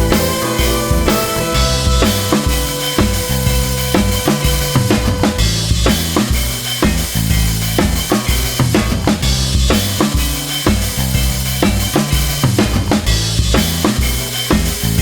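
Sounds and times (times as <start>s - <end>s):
cymbal crash: 0.0s - 6.0s
drum-led music with bass line: 0.0s - 15.0s.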